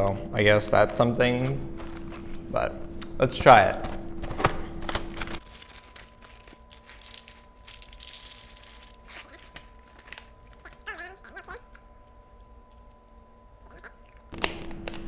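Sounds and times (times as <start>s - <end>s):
plastic bag crinkling: 3.9s - 14.4s.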